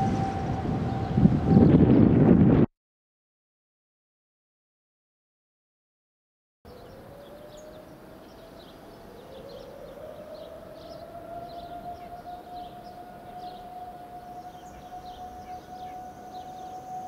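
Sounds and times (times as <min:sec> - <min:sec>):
warning sirens winding up: 0:00.0 - 0:02.0, 0:06.8 - 0:17.0.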